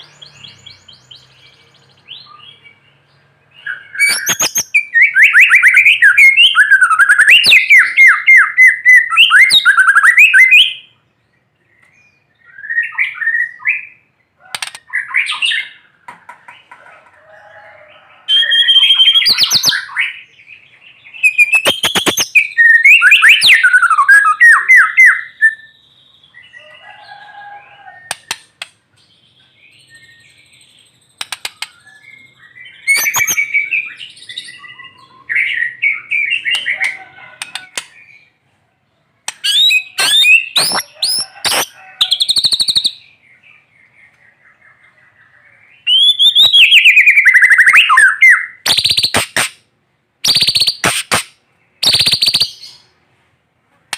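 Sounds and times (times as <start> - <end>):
bird singing whistles: 3.6 - 10.9, 18.3 - 20.2, 21.2 - 26.0, 29.8 - 36.7, 39.4 - 41.7, 45.8 - 49.5, 50.2 - 51.1, 51.8 - 52.8.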